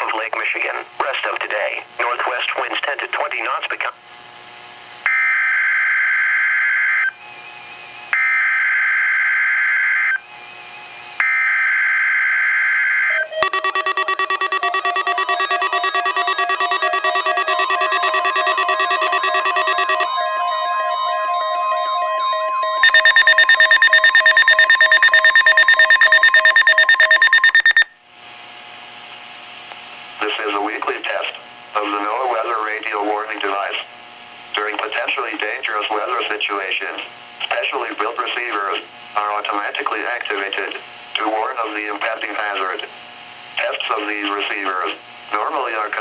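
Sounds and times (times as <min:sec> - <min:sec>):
pulsing alarm: 0:12.8 - 0:27.9
buzzing digital data screech: 0:13.4 - 0:20.2, 0:22.8 - 0:27.9.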